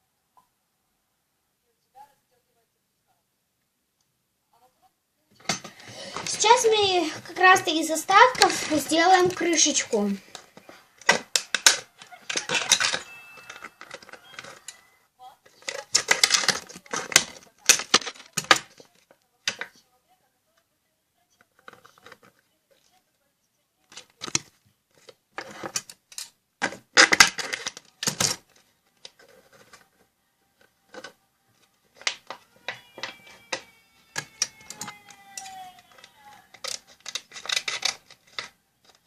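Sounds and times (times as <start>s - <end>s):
scissors snipping plastic: 5.5s - 14.8s, 15.5s - 19.7s, 32.0s - 39.0s.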